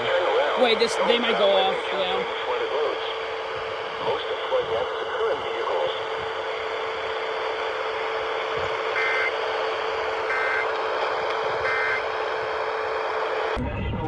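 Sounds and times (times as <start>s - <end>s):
radio hiss: 0.0s - 13.6s
steady hum: 0.0s - 14.0s
two-tone electronic data bursts: 8.9s - 9.4s, 10.2s - 10.7s, 11.6s - 12.1s.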